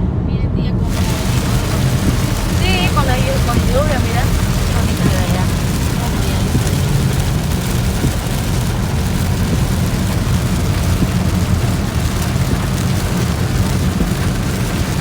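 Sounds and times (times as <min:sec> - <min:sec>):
car interior rumble: 0:00.0 - 0:15.0
rain hissing on wet road: 0:00.8 - 0:15.0.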